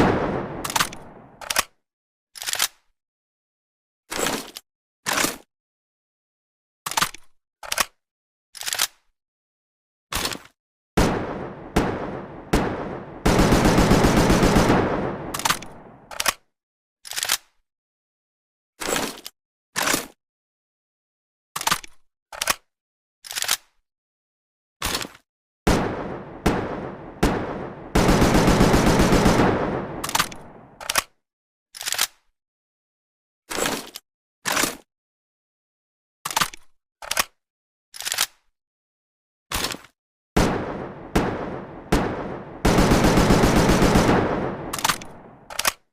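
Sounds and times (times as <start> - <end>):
rifle single shots echoing: 0.0 - 1.4, 11.0 - 16.1, 25.7 - 30.8, 40.4 - 45.6
rifle action clacks: 0.6 - 1.8, 15.3 - 16.4, 29.9 - 31.2, 44.0 - 45.9
automatic gunfire burst: 11.0 - 16.0, 25.7 - 30.8, 40.4 - 45.6.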